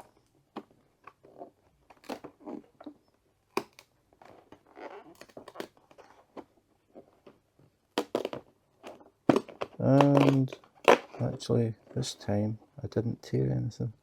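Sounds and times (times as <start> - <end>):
cardboard clicking and scraping: 8.0 - 11.1.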